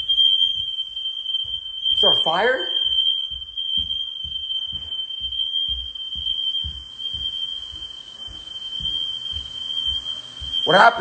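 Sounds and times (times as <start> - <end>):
smoke alarm continuous tone: 0.0 - 11.0
low thuds: 2.9 - 11.0.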